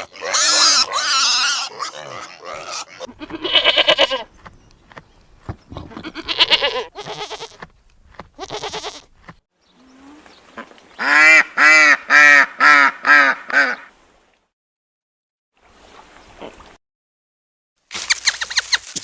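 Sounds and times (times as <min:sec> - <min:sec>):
goat bleating: 0:00.0 - 0:04.4, 0:05.7 - 0:09.2
farm bird calling: 0:00.0 - 0:13.9.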